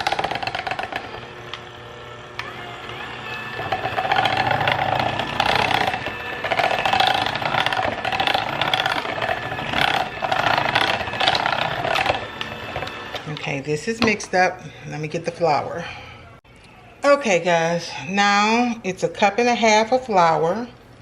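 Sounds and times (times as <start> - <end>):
electric hand mixer beating batter: 0.0 - 15.1.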